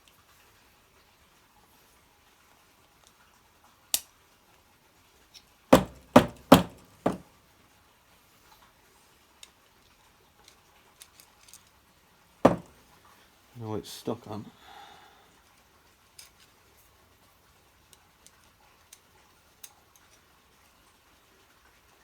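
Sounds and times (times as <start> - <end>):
faint ticks of tools: 3.0 - 3.2, 17.8 - 20.4
loud knocks: 5.8 - 7.2, 12.5 - 12.7.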